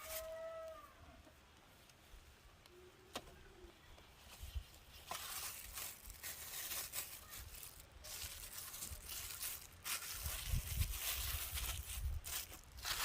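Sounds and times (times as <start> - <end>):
crackling and rustling: 3.1 - 13.0.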